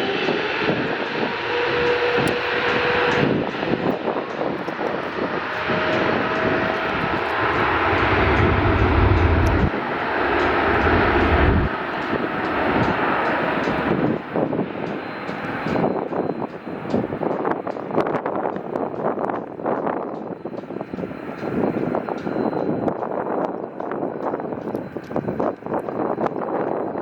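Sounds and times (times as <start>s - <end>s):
jet engines at takeoff power: 0.0s - 27.0s
deep low rumble: 1.0s - 14.3s.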